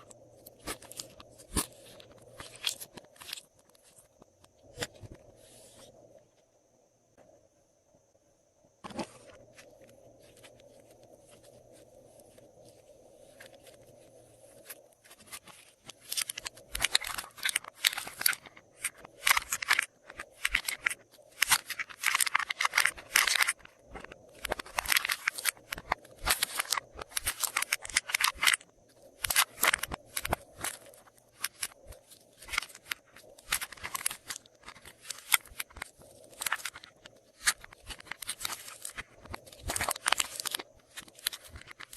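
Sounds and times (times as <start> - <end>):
quiet slime handling: 8.8 - 41.9.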